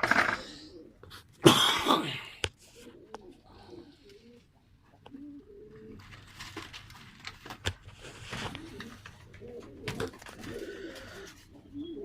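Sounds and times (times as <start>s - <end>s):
pigeons cooing: 0.0s - 1.7s, 2.6s - 6.8s, 8.0s - 12.0s
clicks and rustles: 5.8s - 11.5s.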